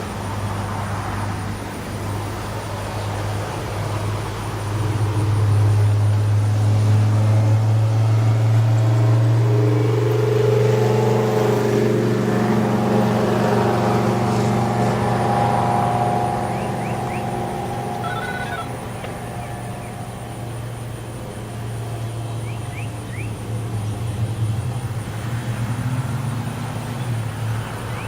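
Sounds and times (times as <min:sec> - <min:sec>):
low hum: 0:04.6 - 0:24.6
electronic siren rising in pitch: 0:15.3 - 0:20.4.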